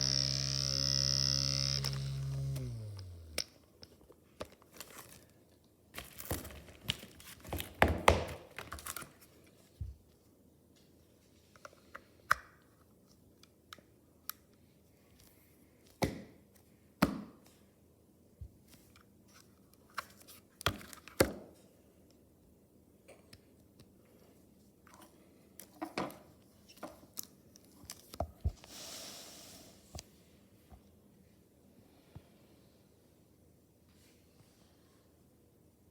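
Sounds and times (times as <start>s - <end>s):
hands handling packaging: 4.3s - 9.6s
packaging rustle: 4.6s - 5.4s, 6.0s - 9.4s.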